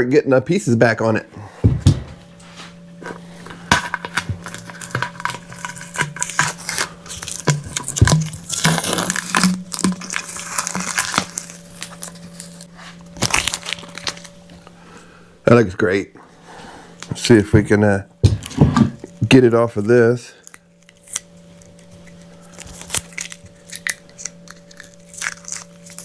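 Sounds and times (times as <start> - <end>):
faint steady hum: 0.0 - 26.0
tape peeling and crinkling: 3.0 - 14.7, 20.4 - 26.0.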